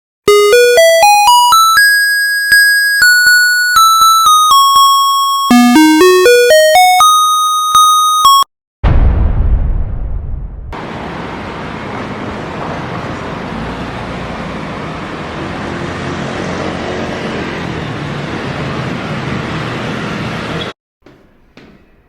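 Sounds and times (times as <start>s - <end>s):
heavy low rumble: 8.8s - 11.1s
road traffic noise: 10.8s - 20.8s.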